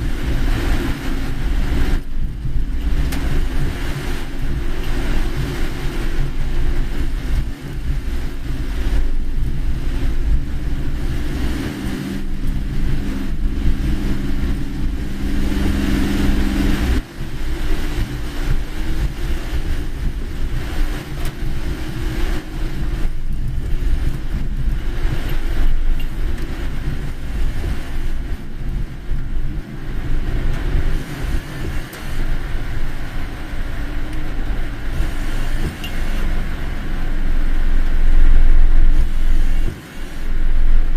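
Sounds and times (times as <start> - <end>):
car driving on wet road: 0.0 - 40.9
steady low hum: 0.0 - 40.9.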